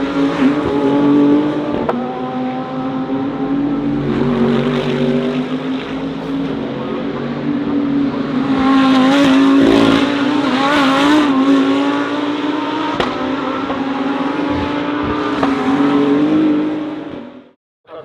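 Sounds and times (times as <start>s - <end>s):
racing engines droning: 0.0s - 17.5s
passing vehicle engine: 0.3s - 13.3s.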